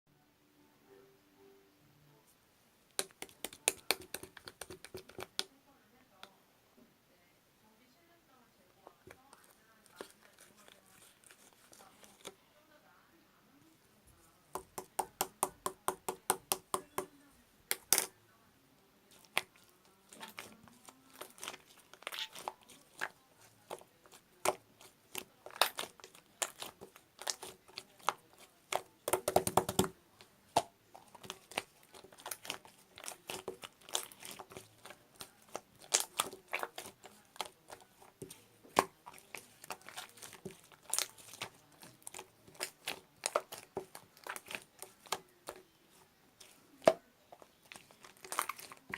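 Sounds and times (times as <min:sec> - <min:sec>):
slime clicking and popping: 0:03.0 - 0:05.5, 0:21.2 - 0:29.9, 0:30.5 - 0:45.6.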